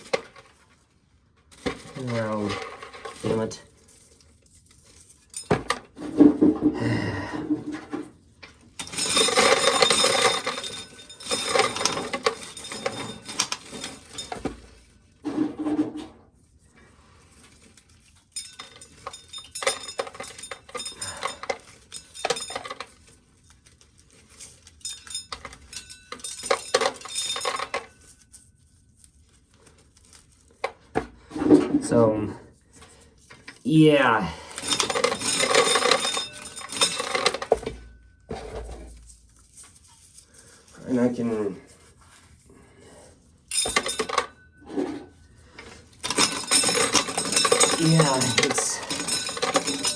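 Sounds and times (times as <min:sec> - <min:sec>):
corn kernels rattling in sheller: 0:01.5 - 0:05.7, 0:08.7 - 0:15.7, 0:17.5 - 0:28.1, 0:34.5 - 0:37.8, 0:45.7 - 0:49.9.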